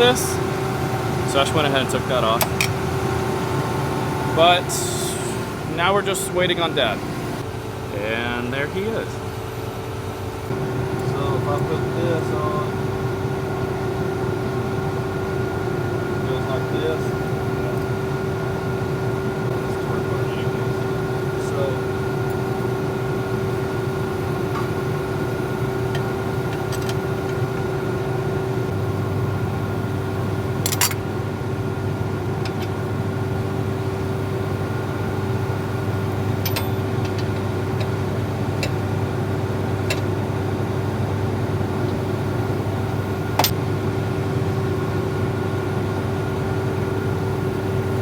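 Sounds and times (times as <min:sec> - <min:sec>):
engine idling: 0:00.0 - 0:07.4.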